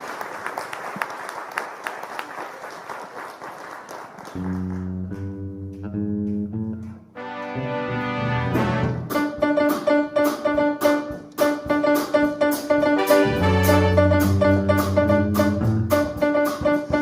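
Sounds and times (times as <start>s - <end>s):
applause: 0.0s - 5.4s
band playing keyboard and bass chords: 4.4s - 17.0s.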